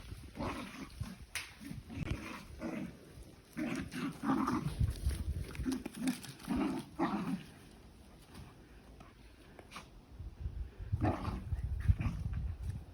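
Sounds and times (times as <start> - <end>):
dog growling and grunting: 0.0 - 7.6, 10.9 - 12.5.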